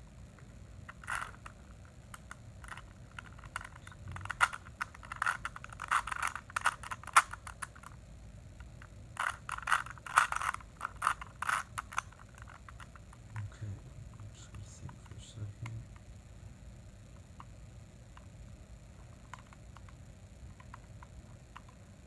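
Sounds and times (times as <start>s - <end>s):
plastic puzzle cube layers clicking: 2.1s - 8.0s, 9.2s - 13.0s.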